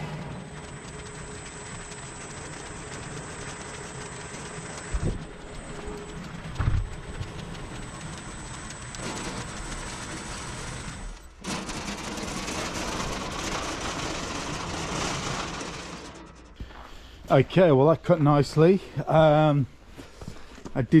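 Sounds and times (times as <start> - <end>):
bandsaw mill sawing log: 7.2 - 16.3.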